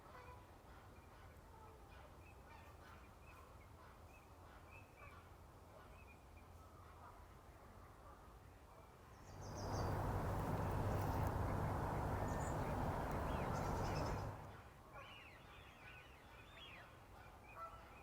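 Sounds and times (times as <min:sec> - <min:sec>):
distant waterfowl calls: 0:09.4 - 0:14.5
low rumble: 0:09.5 - 0:14.5.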